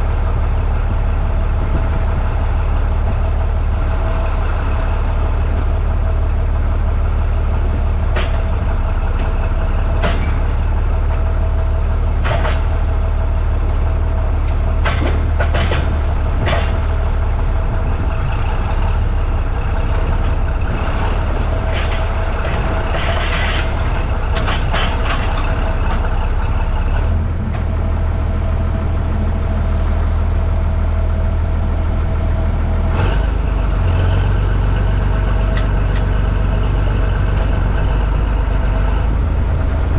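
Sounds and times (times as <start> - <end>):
vehicle engine under load: 0.0 - 39.9
knocks and clanks: 8.1 - 11.3, 12.2 - 12.9, 14.4 - 17.2, 19.6 - 27.8.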